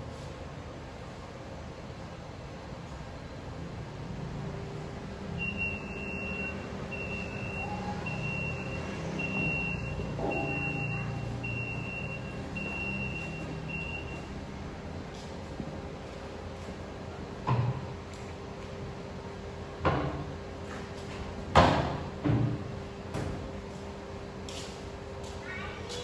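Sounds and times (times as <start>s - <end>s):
engine rumbling: 2.2s - 26.0s
reversing alarm beeps: 5.3s - 14.4s.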